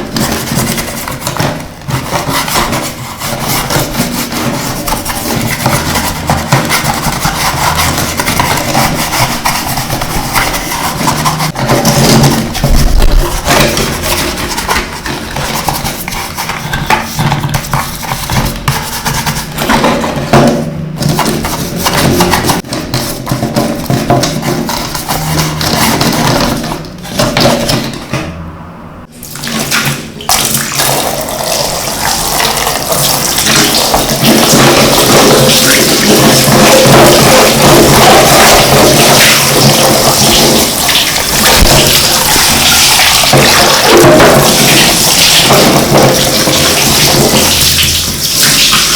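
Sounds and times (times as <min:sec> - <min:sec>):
running water splashing: 0:29.2 - 0:48.9.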